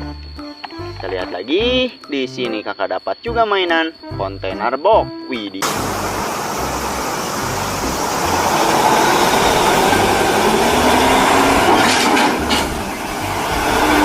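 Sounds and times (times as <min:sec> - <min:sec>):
faint rising tone: 0:05.6 - 0:14.0
loud vehicle noise: 0:05.6 - 0:14.0.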